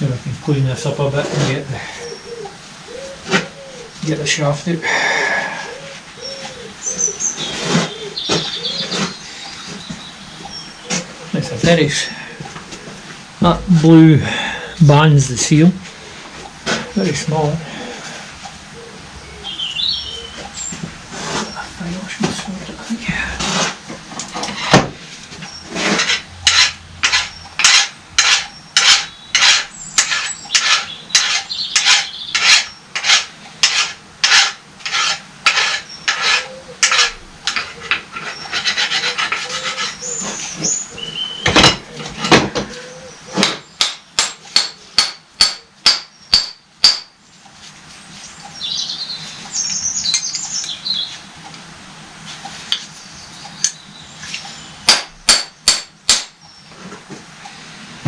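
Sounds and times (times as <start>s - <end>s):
hand tool scraping metal: 7.3s - 9.2s, 23.4s - 40.6s.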